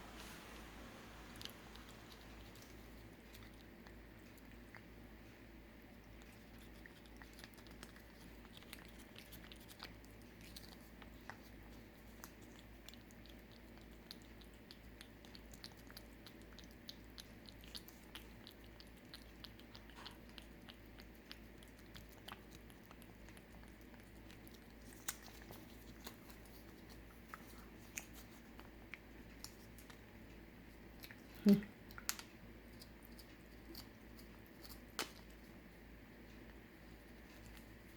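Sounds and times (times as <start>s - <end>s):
cat licking and chewing: 0.0s - 37.9s.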